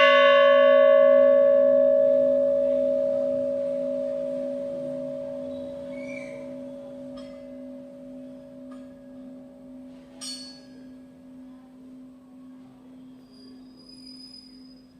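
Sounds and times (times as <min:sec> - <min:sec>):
temple bell humming: 0:00.0 - 0:13.8.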